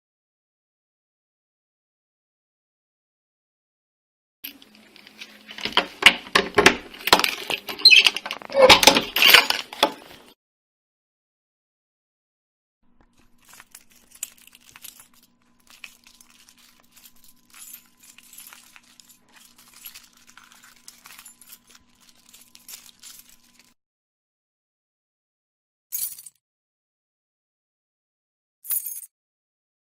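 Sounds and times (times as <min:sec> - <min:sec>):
keys jangling: 0:07.1 - 0:09.6, 0:13.2 - 0:23.7.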